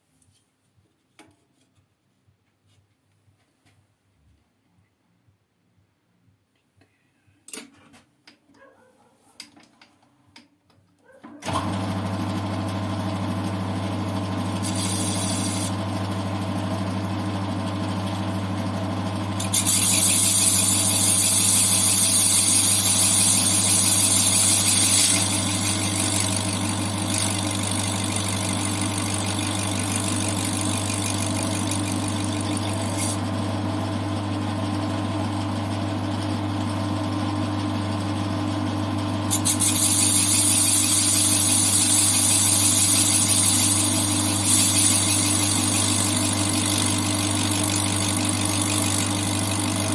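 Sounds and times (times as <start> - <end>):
lathe humming: 11.4 - 49.9
hissing scraping on spinning part: 14.4 - 15.8, 19.4 - 33.2, 39.3 - 49.9.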